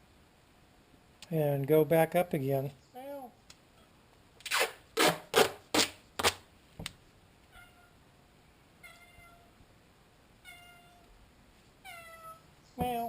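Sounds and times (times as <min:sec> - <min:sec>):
cat meowing faintly: 0:08.8 - 0:09.6.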